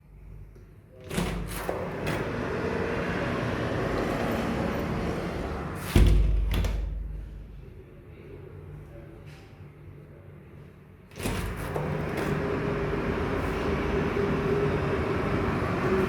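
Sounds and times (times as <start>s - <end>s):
loud outside noise: 12.4s - 16.0s.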